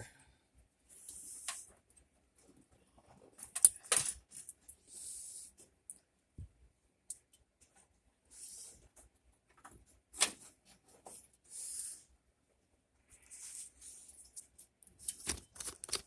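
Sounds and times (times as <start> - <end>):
small metallic clicks and rattles: 3.1 - 4.8
short scraping hisses: 11.5 - 12.1.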